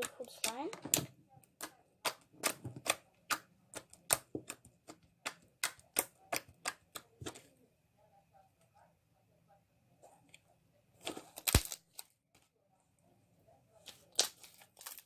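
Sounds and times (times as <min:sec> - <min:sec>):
slime clicking and popping: 0:00.0 - 0:07.0.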